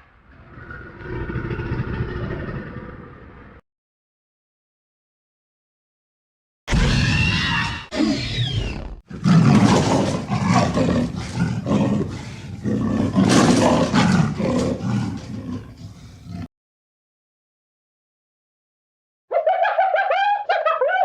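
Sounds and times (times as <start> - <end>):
dinosaur roar: 0.3 - 3.6, 9.1 - 16.5.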